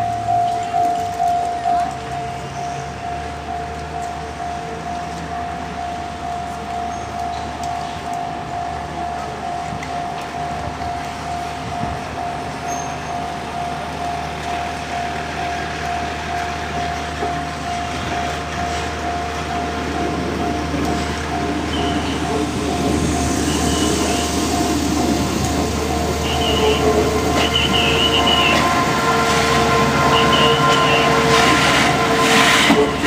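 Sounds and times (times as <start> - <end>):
level-crossing warning bell: 0.0 - 33.0
train rumbling across crossing: 0.0 - 33.0
train wheel squeals: 12.5 - 13.5, 20.0 - 33.0.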